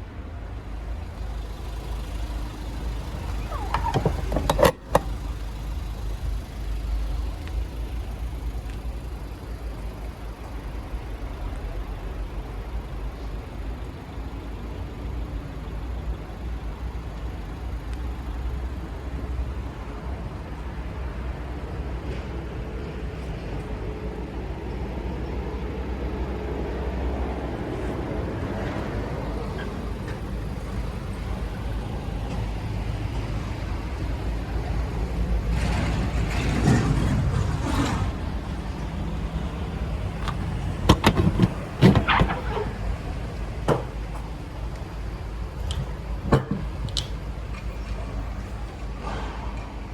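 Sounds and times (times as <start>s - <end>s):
diesel engine idling: 0.1s - 49.9s.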